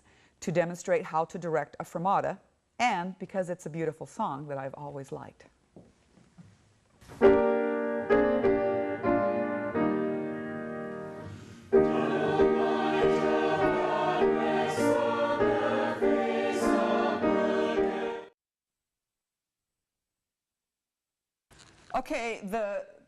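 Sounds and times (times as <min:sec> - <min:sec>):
piano chords: 0:07.2 - 0:18.3
choir singing a hymn: 0:11.1 - 0:18.4.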